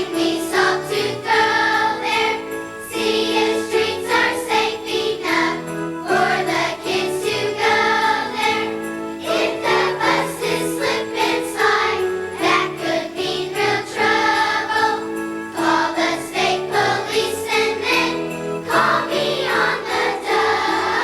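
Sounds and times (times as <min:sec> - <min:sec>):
children's choir singing: 0:00.0 - 0:21.0
children's choir singing a christmas song: 0:00.0 - 0:21.0
musical accompaniment: 0:00.0 - 0:21.0.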